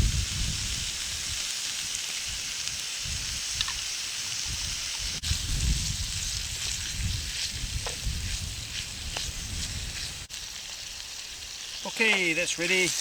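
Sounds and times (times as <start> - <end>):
wind rumble on microphone: 0.0 - 1.4, 2.3 - 10.3
food sizzling in a frying pan: 0.0 - 13.0.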